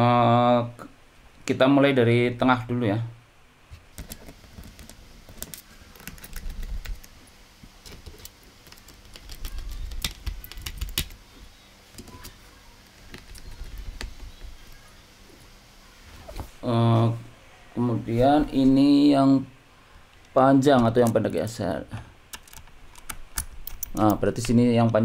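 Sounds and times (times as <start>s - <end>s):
screws clicking and rattling: 22.3s - 24.6s.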